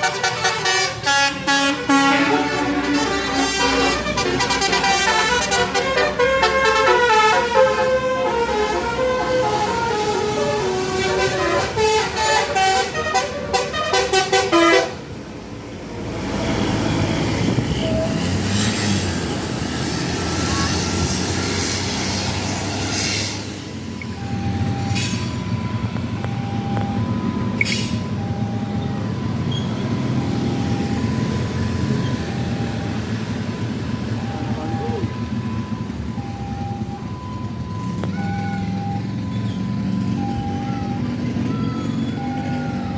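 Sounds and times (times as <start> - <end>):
multi-tone bus horn tune: 0.0 - 15.2
bus engine: 0.0 - 42.9
road noise: 0.0 - 42.9.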